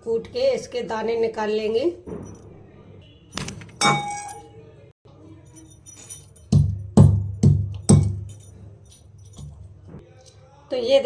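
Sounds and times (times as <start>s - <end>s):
pestle pounding in a mortar: 6.5s - 8.3s.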